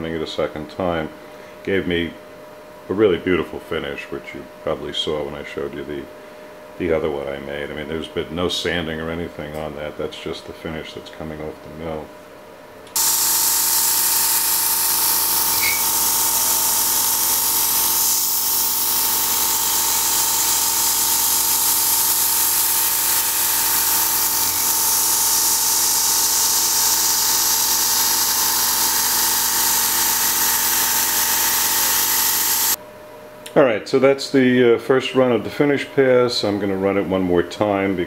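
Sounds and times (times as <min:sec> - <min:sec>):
milling machine spindle whine: 0:13.0 - 0:32.8.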